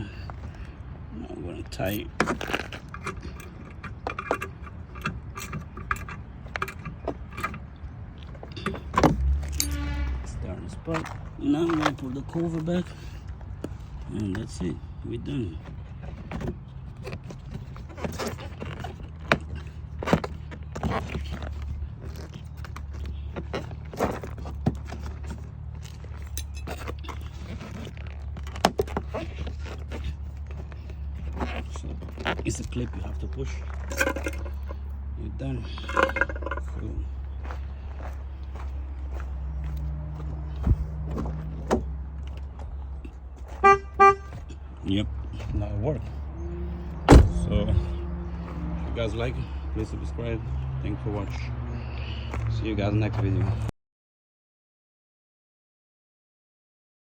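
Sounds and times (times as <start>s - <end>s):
small parts clicking and rattling: 1.8s - 9.8s, 23.9s - 32.5s
low thump: 47.1s - 47.8s.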